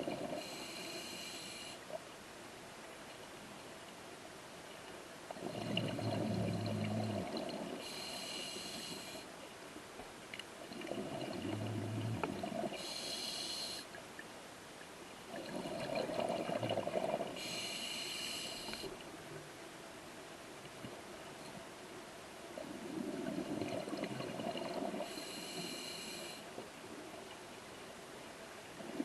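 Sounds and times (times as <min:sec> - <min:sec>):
diver breathing through regulator: 0:00.4 - 0:01.8, 0:05.4 - 0:09.3, 0:11.5 - 0:13.9, 0:17.4 - 0:18.9, 0:25.0 - 0:26.5.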